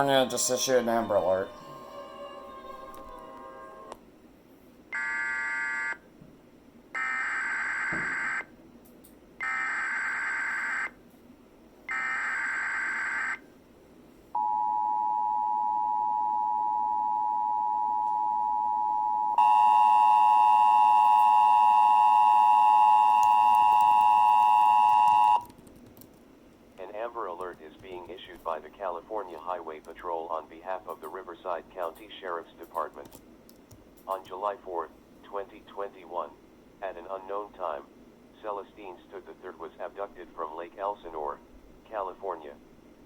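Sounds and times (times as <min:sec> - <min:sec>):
two-tone attention signal: 0:14.4 - 0:25.4.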